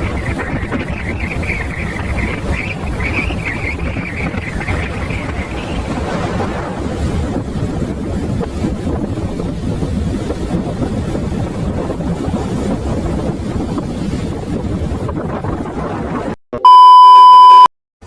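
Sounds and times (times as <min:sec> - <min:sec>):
dense rumbling noise: 0:00.0 - 0:16.4
loud high beep: 0:16.6 - 0:17.7.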